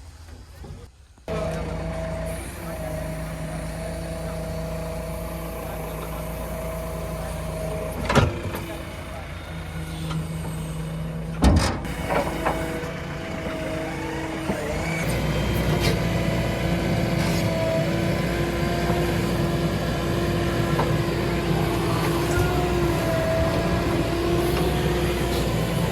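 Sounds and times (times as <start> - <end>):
diesel engine under load: 0.0 - 25.9
hydraulic whine: 0.0 - 25.9
loud clanking thump: 11.4 - 12.8.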